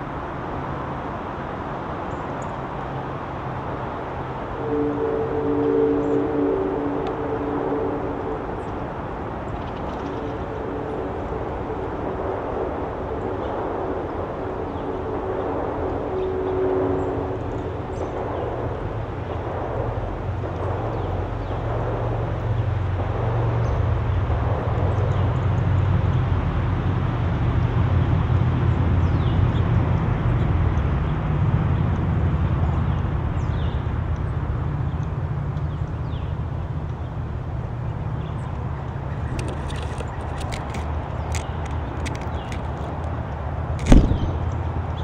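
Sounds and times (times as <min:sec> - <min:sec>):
steady low rumble: 0:00.0 - 0:26.7, 0:37.1 - 0:44.9.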